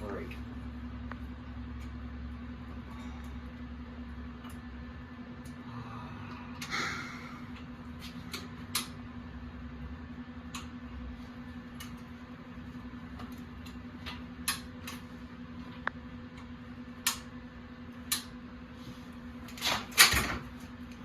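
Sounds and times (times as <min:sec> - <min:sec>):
steady low hum: 0:00.0 - 0:21.0
sharp clicks: 0:17.0 - 0:17.3.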